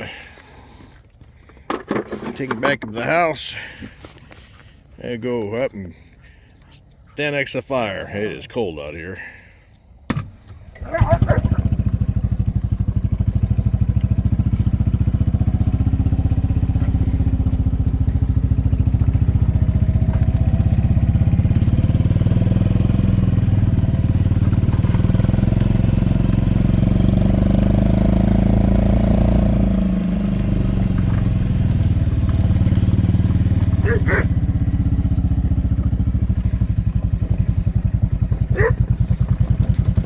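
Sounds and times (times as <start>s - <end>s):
golf cart engine putter: 10.1s - 14.2s.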